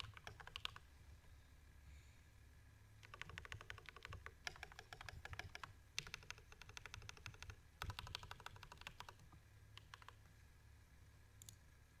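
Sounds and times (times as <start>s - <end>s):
mechanical keyboard typing: 0.0s - 0.9s, 3.0s - 10.2s.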